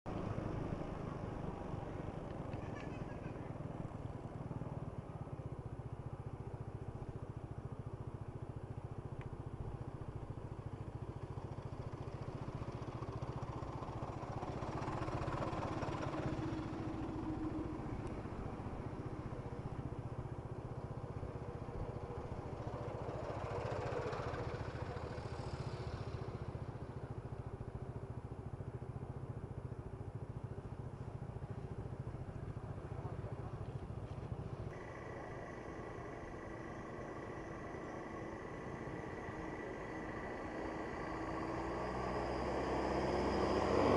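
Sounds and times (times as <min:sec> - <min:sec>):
motorcycle and vehicle engines: 0:00.0 - 0:43.9
vehicles passing loudly: 0:00.0 - 0:43.9.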